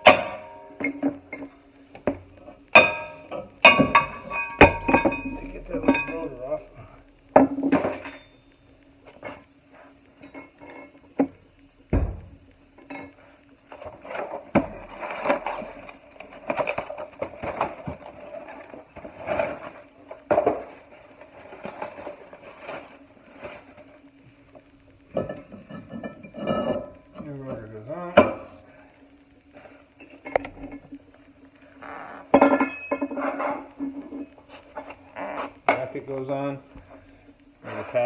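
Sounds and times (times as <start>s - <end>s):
faint steady hum: 0.0s - 38.0s
metal tools clinking: 2.8s - 6.8s, 7.7s - 8.5s.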